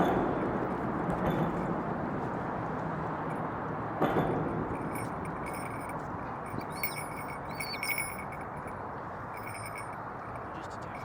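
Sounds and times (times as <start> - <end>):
small metal bells jingling: 4.8 - 11.0
short high chirps: 6.6 - 8.2.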